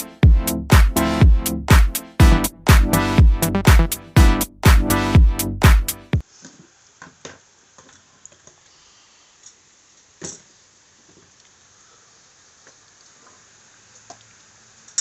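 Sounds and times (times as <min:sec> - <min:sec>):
electronic dance music: 0:00.0 - 0:06.2.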